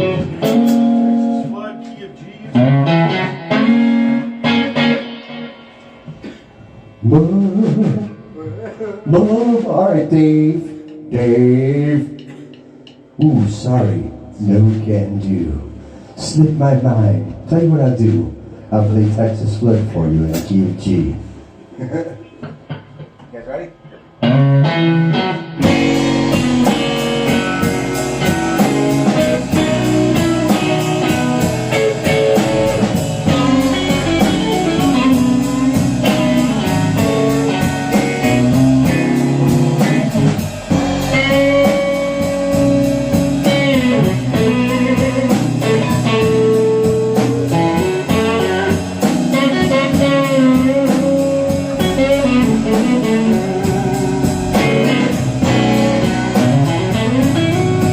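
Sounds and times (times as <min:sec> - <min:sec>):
electric guitar playing blues lead: 0:00.0 - 0:08.4, 0:24.2 - 0:57.9
drum kit cymbals: 0:00.0 - 0:09.8, 0:18.0 - 0:24.9, 0:25.6 - 0:57.9.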